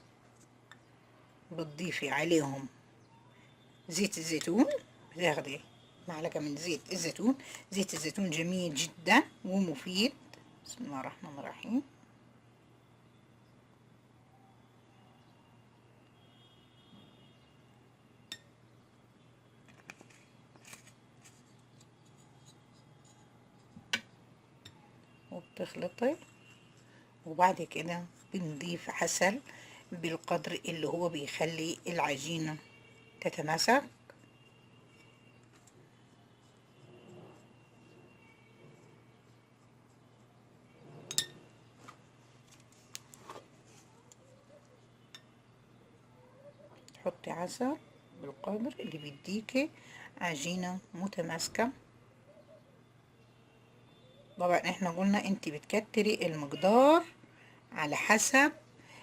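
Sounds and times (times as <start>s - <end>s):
spoon scraping a mixing bowl: 36.4s - 38.2s, 40.8s - 41.5s
spoon clinking against bowl: 41.1s - 41.5s.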